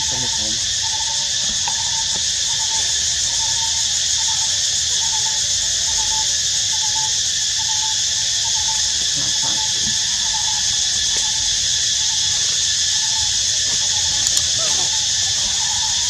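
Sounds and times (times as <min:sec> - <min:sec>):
forest insects droning: 0:00.0 - 0:16.0.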